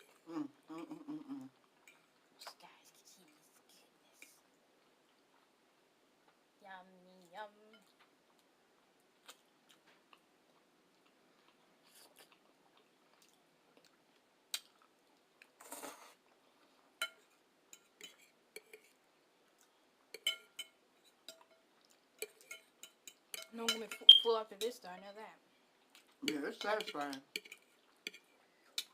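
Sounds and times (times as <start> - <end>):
chewing: 4.2 - 5.6, 7.2 - 24.0, 25.7 - 28.9
cutlery clinking on a dish: 17.0 - 18.9, 20.2 - 21.6, 22.2 - 24.8, 26.2 - 28.9.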